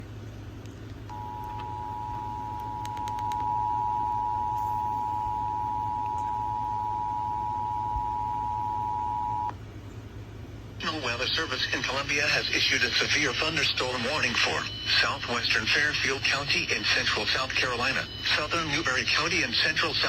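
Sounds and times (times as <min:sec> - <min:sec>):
low background hum: 0:00.0 - 0:20.0
two-tone alert signal: 0:01.1 - 0:09.5.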